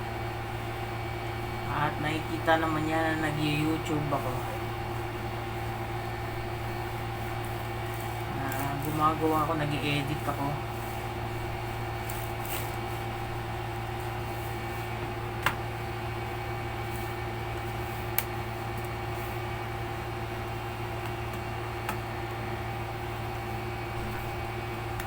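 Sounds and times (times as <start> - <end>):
steady mechanical hum: 0.0 - 25.0.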